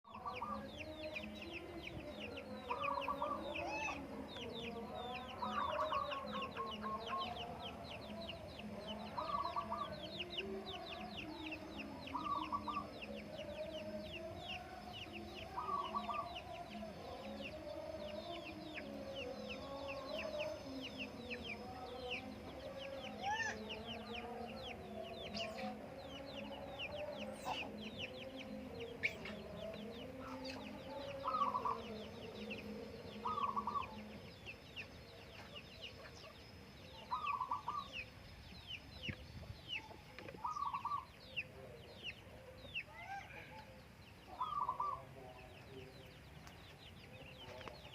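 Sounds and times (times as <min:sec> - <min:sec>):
chickens clucking: 0:00.1 - 0:47.9
doves cooing: 0:11.8 - 0:13.0, 0:26.5 - 0:34.2, 0:37.0 - 0:38.0, 0:39.8 - 0:41.6, 0:42.2 - 0:45.2.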